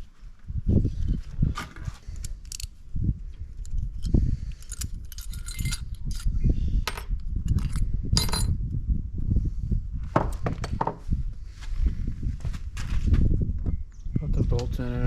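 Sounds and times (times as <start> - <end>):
steady low rumble: 0.0 - 15.0
metal tools clinking: 3.6 - 6.3, 6.9 - 8.6.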